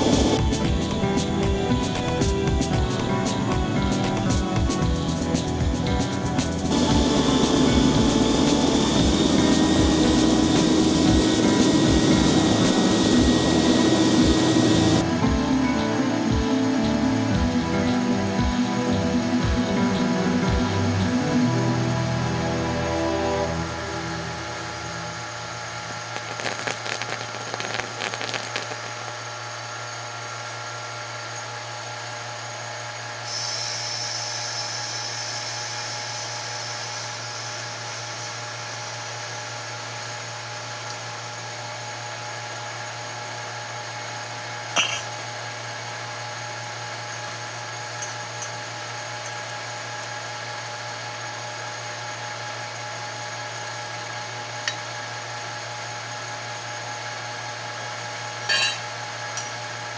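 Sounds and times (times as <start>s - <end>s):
pump motor humming and whining: 0.0s - 59.9s
hiss of air: 33.2s - 39.6s.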